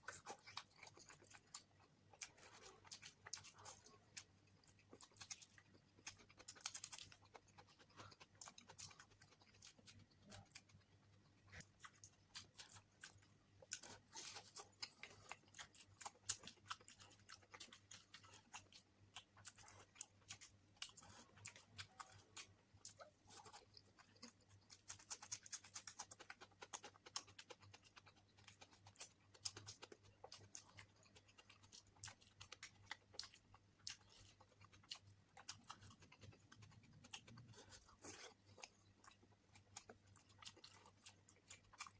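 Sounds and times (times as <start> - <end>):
person chewing with wet mouth smacks: 0.0 - 41.9.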